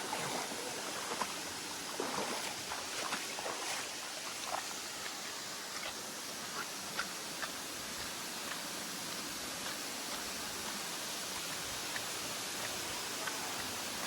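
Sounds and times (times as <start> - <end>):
rushing water: 0.0 - 14.0.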